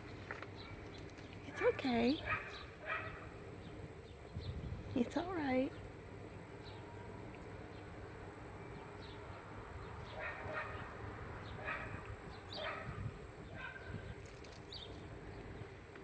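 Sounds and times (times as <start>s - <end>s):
outdoor background: 0.0s - 16.0s
dog barking: 1.6s - 3.3s, 10.2s - 10.9s, 11.6s - 12.0s, 12.6s - 13.9s.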